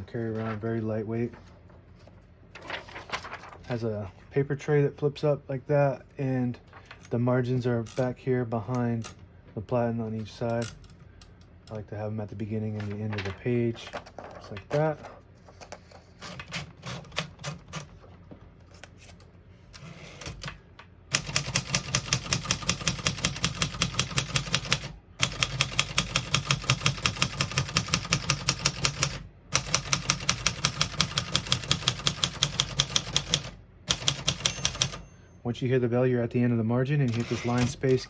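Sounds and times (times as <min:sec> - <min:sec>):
manual typewriter keystrokes: 0:16.2 - 0:17.9, 0:20.2 - 0:35.0, 0:37.1 - 0:38.0.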